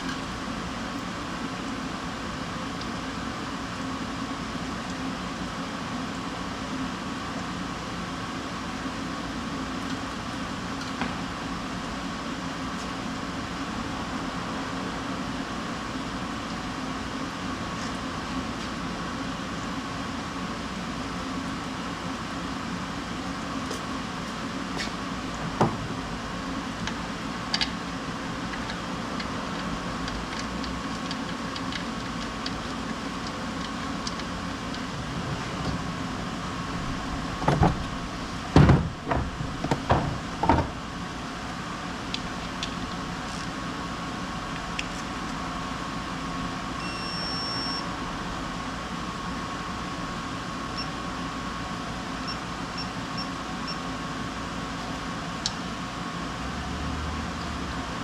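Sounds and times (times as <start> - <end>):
mechanical hum: 0.0 - 58.0
loud knocks: 25.4 - 26.0, 37.4 - 37.9, 38.5 - 40.8
high electronic beep: 46.8 - 47.8.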